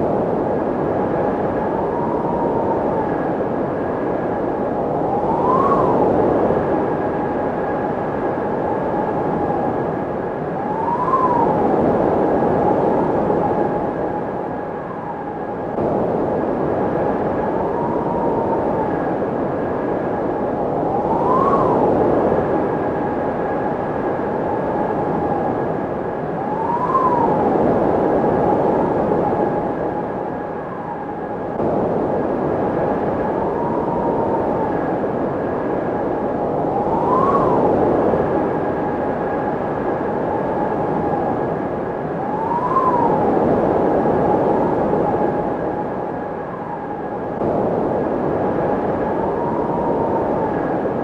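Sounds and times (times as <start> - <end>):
constant whine: 0.0 - 51.0.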